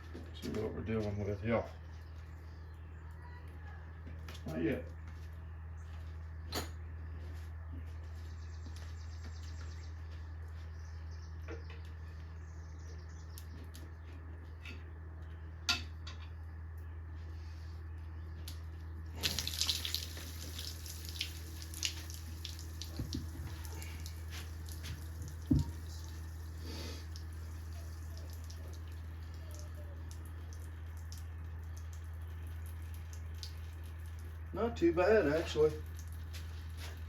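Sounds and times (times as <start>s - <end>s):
steady low hum: 0.0s - 37.0s
liquid dripping: 19.1s - 37.0s.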